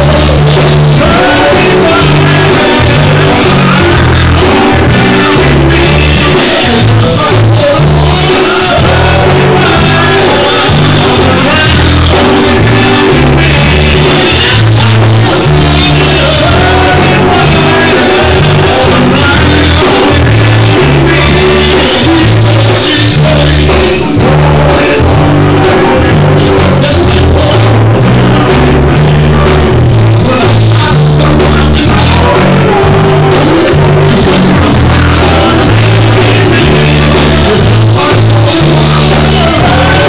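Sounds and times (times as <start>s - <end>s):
heavy bass line: 0.0s - 40.0s
lead singer: 0.0s - 40.0s
live rock band playing: 0.0s - 40.0s.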